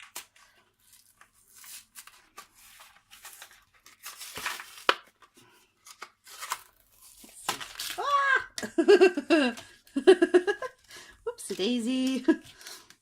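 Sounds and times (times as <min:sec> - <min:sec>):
packaging tearing and crinkling: 0:00.0 - 0:05.2, 0:05.8 - 0:08.2.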